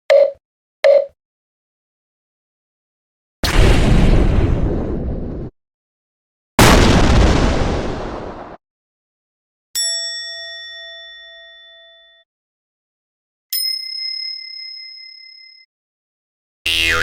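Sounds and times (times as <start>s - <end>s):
low bell-like ding: 9.8s - 12.2s.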